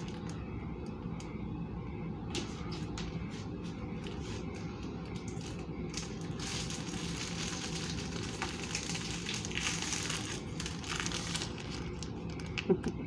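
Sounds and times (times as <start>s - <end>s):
packaging crinkling: 0.0s - 0.4s, 4.0s - 12.8s
steady low hum: 0.0s - 13.0s.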